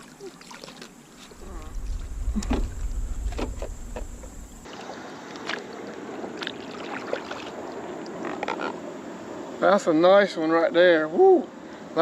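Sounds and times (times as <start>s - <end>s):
water splashing: 0.0s - 8.7s
low rumble: 1.3s - 4.7s.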